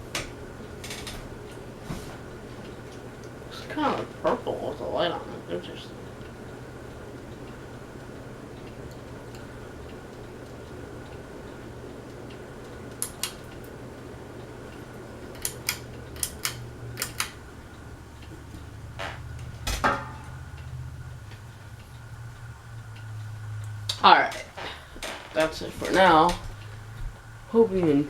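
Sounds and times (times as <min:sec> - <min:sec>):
ceiling fan humming: 0:00.0 - 0:28.0
sharp clicks: 0:12.1 - 0:13.7, 0:15.3 - 0:17.4.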